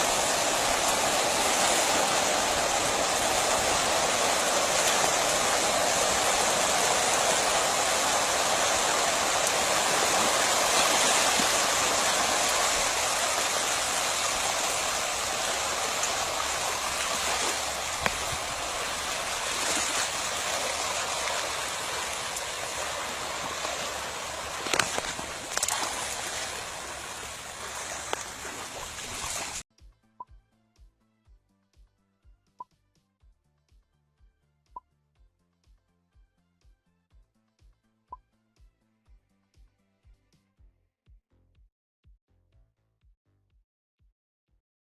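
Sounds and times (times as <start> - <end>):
rushing splashing water: 0.0 - 29.6.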